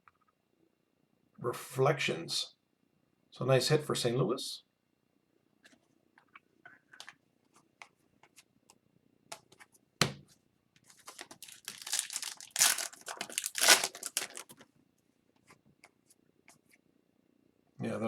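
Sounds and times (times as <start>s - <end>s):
wrapper tearing and crinkling: 11.0s - 14.6s.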